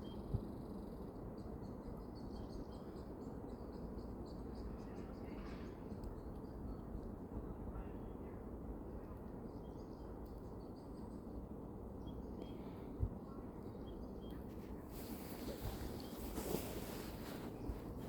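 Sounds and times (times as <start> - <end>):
small birds chirping: 12.0 - 18.0.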